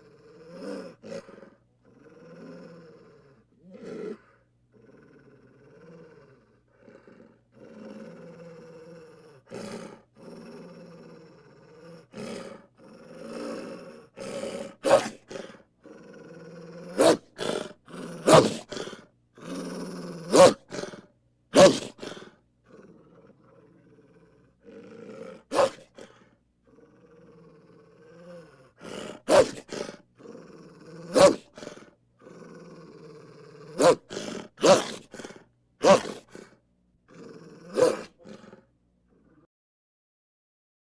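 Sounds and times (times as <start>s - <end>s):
wolves growling: 0.0s - 39.5s
wolves barking: 14.5s - 15.6s, 16.8s - 19.0s, 20.2s - 21.0s, 21.6s - 22.3s, 25.0s - 26.2s, 28.8s - 30.0s, 31.0s - 31.8s, 33.7s - 36.5s, 37.6s - 38.5s.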